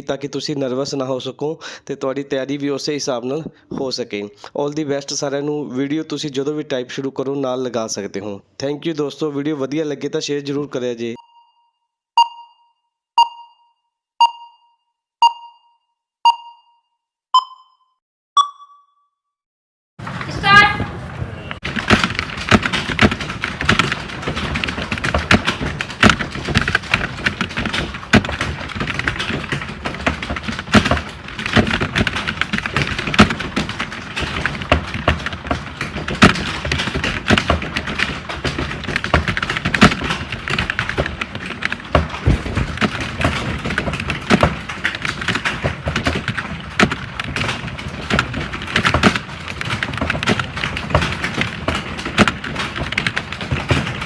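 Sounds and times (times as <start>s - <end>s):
many keyboards typing: 20.0s - 54.0s.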